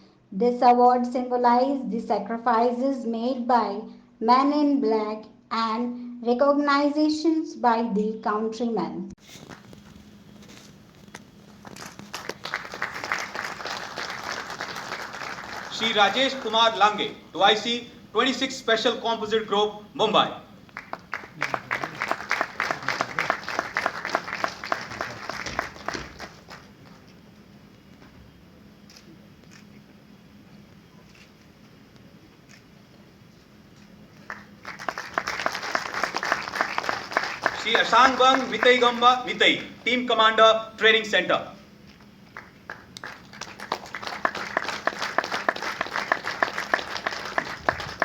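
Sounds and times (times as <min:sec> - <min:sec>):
faint steady hum: 0:00.0 - 0:48.0
audience applauding: 0:11.5 - 0:17.2, 0:20.7 - 0:27.1, 0:34.2 - 0:39.7, 0:42.3 - 0:48.0.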